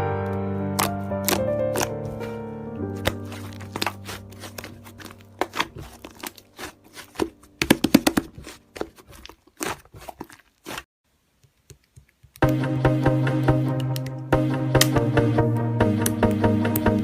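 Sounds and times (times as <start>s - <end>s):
background music: 0.0s - 8.6s, 12.4s - 17.0s
slime clicking and popping: 0.8s - 2.0s, 3.0s - 10.1s.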